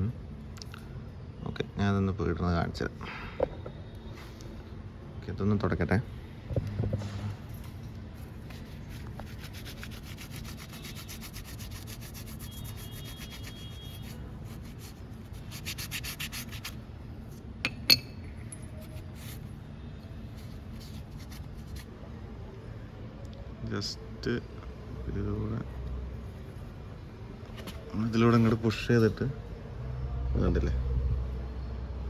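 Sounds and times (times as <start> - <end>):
cloth rubbing on metal: 8.2 - 16.8, 20.3 - 21.9.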